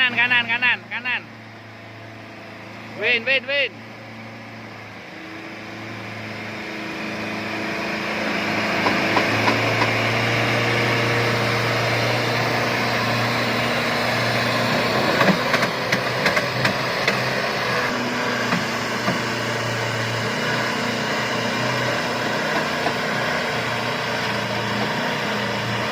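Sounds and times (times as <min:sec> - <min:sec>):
engine running while winching: 0:00.0 - 0:25.9
sharp knocks and clicks: 0:15.2 - 0:17.3.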